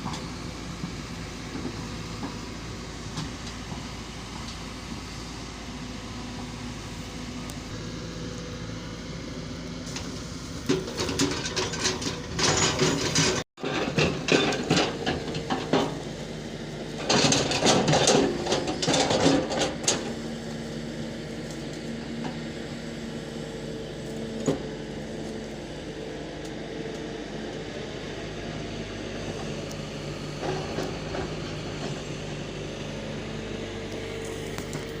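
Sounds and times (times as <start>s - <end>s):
loud clattering and knocking: 10.7s - 16.0s.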